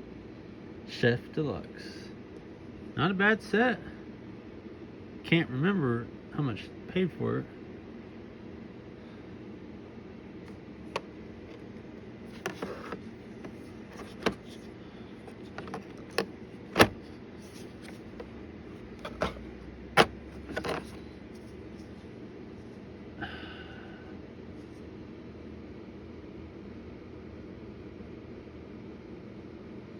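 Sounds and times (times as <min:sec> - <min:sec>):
knife set clicks and knocks: 0:15.6 - 0:17.0, 0:19.0 - 0:19.4, 0:20.0 - 0:21.0.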